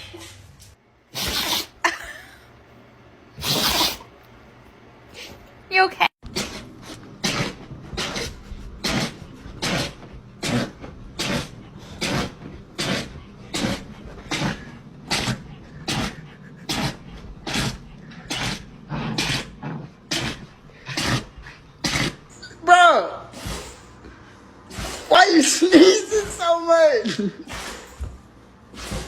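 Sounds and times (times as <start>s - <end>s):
pet sneezing: 1.1s - 2.0s, 3.4s - 4.2s, 6.3s - 22.6s, 23.2s - 24.0s, 24.7s - 28.1s.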